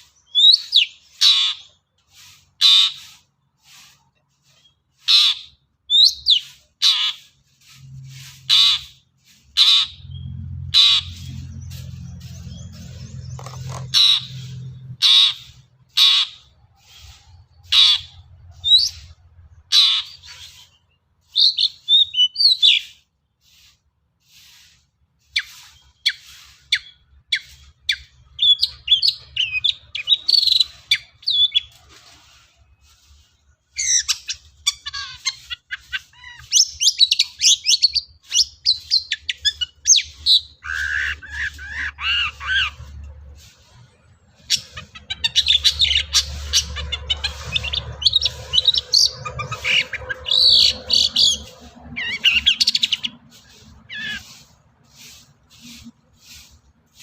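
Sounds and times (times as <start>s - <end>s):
shrike singing and chattering: 0.0s - 7.6s, 8.4s - 23.7s, 25.3s - 31.8s, 33.7s - 43.1s, 43.7s - 57.0s.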